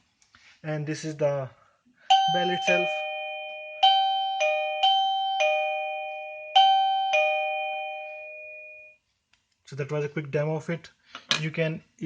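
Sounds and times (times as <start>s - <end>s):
electronic doorbell chime: 2.1s - 9.0s.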